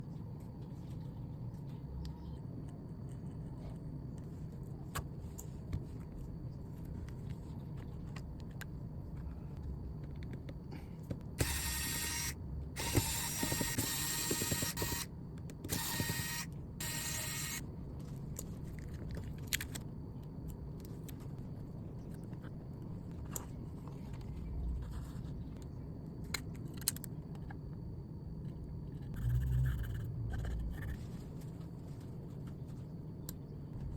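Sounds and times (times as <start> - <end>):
steady low hum: 0.0 - 33.9
loud hiss bursts: 11.4 - 15.1
repair tools clicking and scraping: 11.4 - 17.6.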